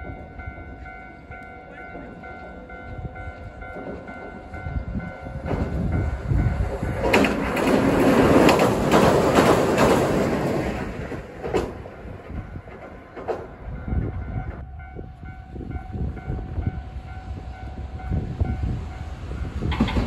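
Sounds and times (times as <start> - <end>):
wheels clacking over rail joints: 0.0 - 14.6, 19.6 - 20.0
train passing: 0.0 - 20.0.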